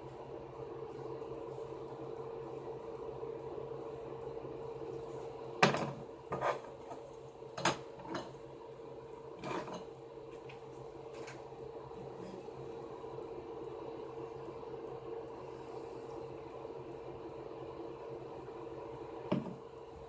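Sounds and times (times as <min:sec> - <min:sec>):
electrical hum: 0:00.0 - 0:20.0.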